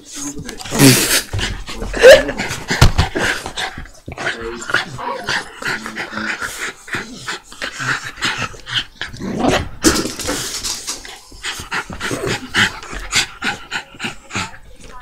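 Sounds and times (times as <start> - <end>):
dog panting: 0.2 - 15.0.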